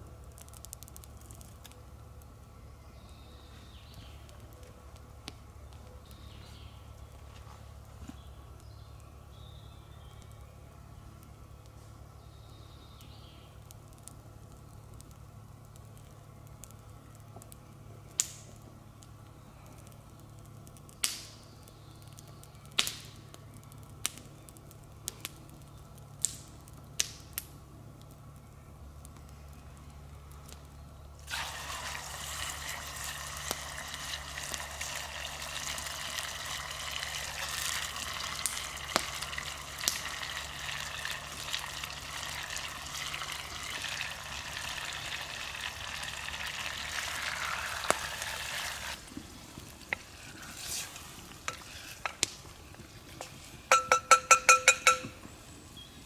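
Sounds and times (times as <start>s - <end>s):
food sizzling in hot oil: 31.2s - 52.2s.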